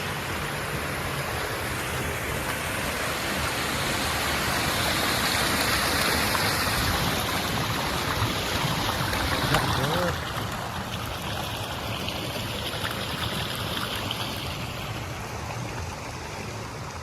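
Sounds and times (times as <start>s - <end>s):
water rushing over rocks: 0.0s - 17.0s.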